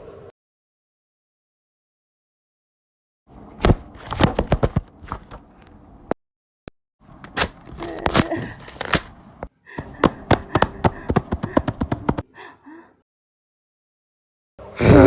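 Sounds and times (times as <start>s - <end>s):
sharp taps and knocks: 10.0s - 12.2s.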